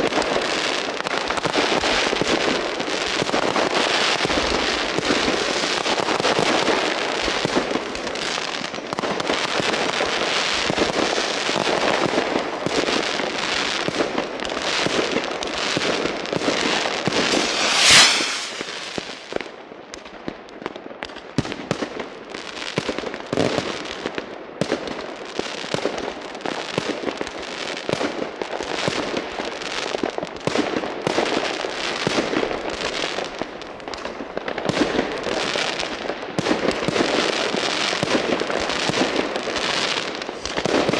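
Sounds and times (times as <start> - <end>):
fireworks crackling and bursting: 16.6 - 19.4, 38.0 - 40.9
loud firework blast: 17.1 - 19.4.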